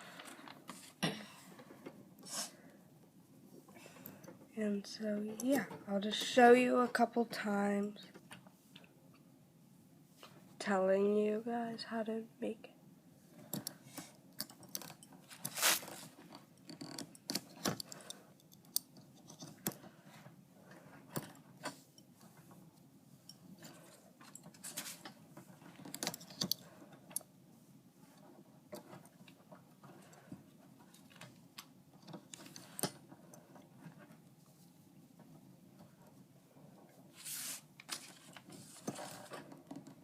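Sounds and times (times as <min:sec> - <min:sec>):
scratchy yarn rustles: 0:15.2 - 0:16.3, 0:19.2 - 0:40.0.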